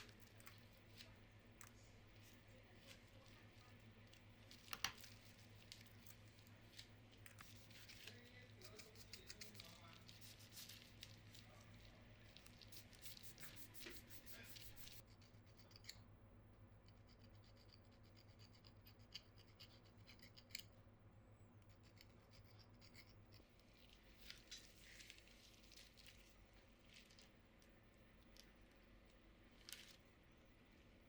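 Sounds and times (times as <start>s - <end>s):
low steady hum: 0.0s - 31.0s
scratching and clicks on keyboard: 2.8s - 11.2s.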